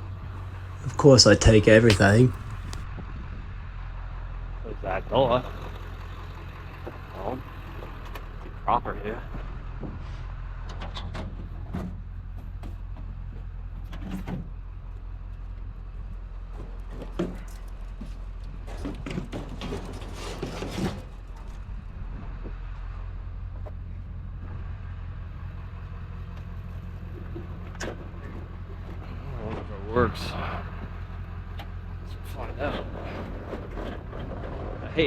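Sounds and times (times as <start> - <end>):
vehicle engine idling: 0.0 - 19.6, 21.0 - 35.0
handling knocks and clatter: 0.6 - 2.8, 16.4 - 21.7, 32.6 - 34.8.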